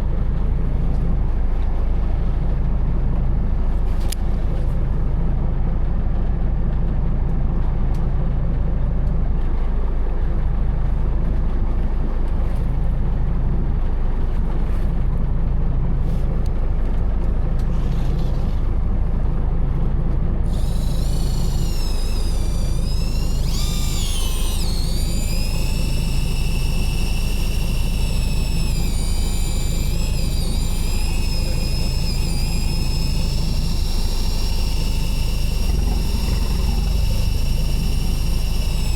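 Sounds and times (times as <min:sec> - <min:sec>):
boat engine low rumble: 0:00.0 - 0:38.9
high-pitched wavering whine: 0:20.4 - 0:38.9.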